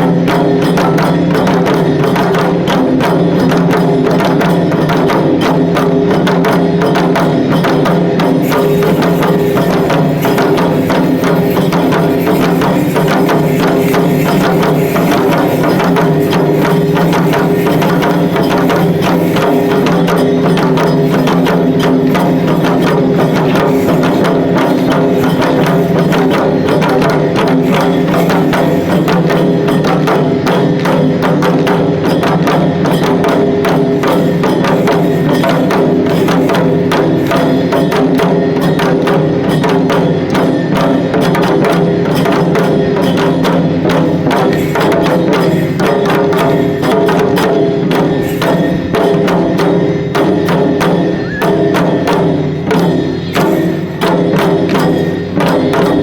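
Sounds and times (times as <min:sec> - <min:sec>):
drum beaten in fast rhythm: 0:00.0 - 0:56.0
steady held tones: 0:08.1 - 0:30.1.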